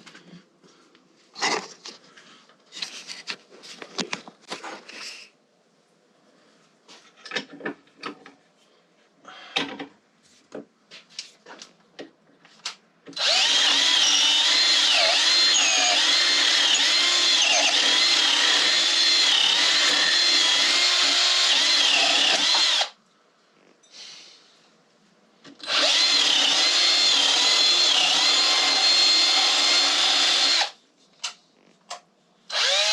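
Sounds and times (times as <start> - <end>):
power drill running: 13.2 - 23.0, 25.6 - 30.8, 32.5 - 32.9.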